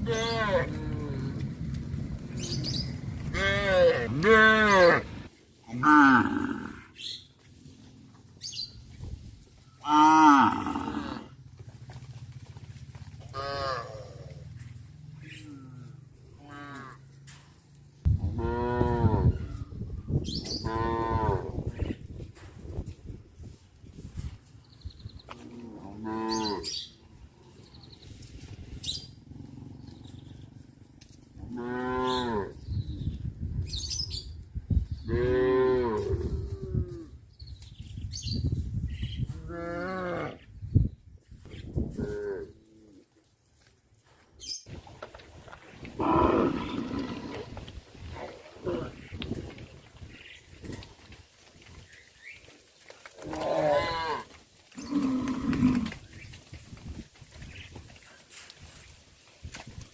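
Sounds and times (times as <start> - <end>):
cows mooing: 0.0 - 6.9, 9.8 - 11.4, 13.3 - 14.5, 18.3 - 19.3, 20.6 - 21.5, 25.4 - 26.8, 31.4 - 32.6, 46.0 - 49.0, 53.2 - 56.0.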